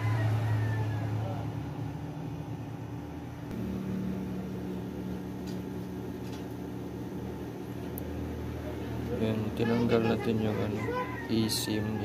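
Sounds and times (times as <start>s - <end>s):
low mechanical motor hum: 0.0s - 12.0s.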